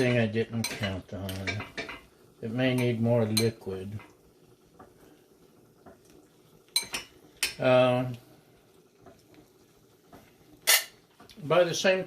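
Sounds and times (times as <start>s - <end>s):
metal utensil clinking on pot: 0.0s - 2.0s, 6.7s - 7.6s, 10.6s - 11.0s.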